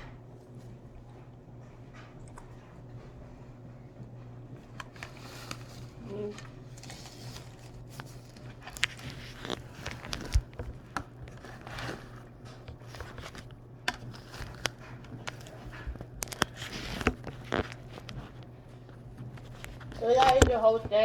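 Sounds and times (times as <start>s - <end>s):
people chewing crunchy food: 0.0s - 20.8s
low steady hum: 0.0s - 21.0s
handling clicks and rustles: 4.6s - 21.0s
crisp crunches: 4.8s - 20.8s.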